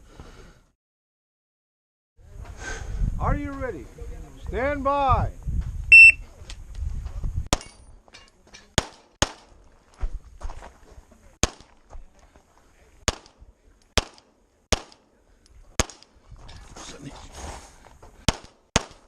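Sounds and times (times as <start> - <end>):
shot timer beep: 5.9 - 6.2
pistol shots: 14.0 - 15.1.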